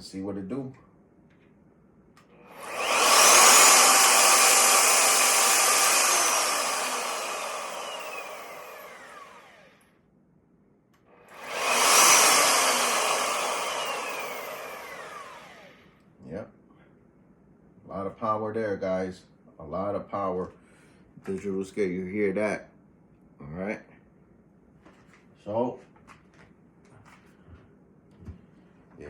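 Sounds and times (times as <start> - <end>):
electric router motor whining: 2.4 - 9.8, 11.2 - 15.9.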